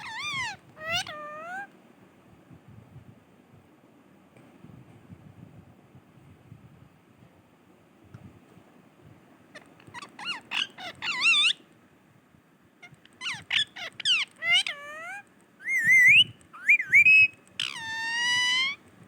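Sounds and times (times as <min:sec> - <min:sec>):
parrot whistling and calling: 0:00.0 - 0:01.7, 0:09.9 - 0:11.6, 0:13.2 - 0:18.8.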